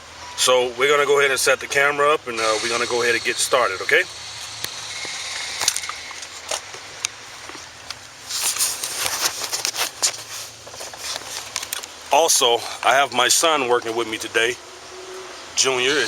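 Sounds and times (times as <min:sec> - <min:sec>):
steady low hum: 0:00.0 - 0:16.0
rustle: 0:04.2 - 0:16.0.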